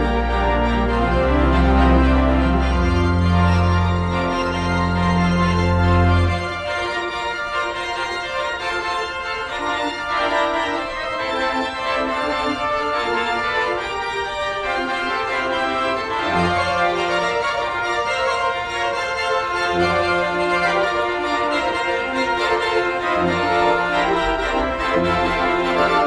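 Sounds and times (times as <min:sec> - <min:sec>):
deep organ bass note: 0:00.0 - 0:06.5
organ chords: 0:00.0 - 0:07.5, 0:15.5 - 0:26.0.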